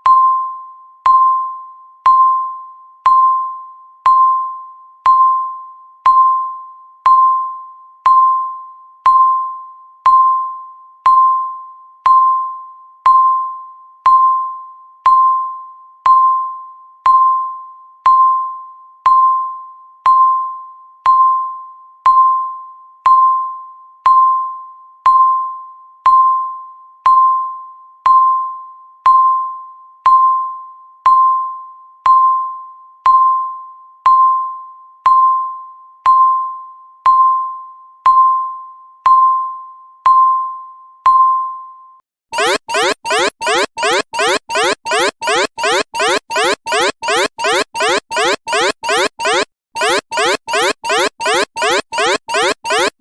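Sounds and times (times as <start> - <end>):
countdown timer beeps: 42.4 - 53.0.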